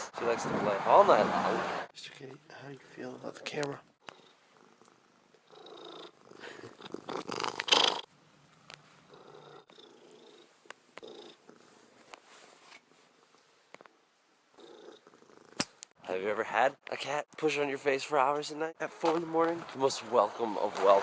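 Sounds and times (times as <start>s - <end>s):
cat purring: 4.0s - 8.1s, 9.0s - 12.1s, 14.5s - 15.6s.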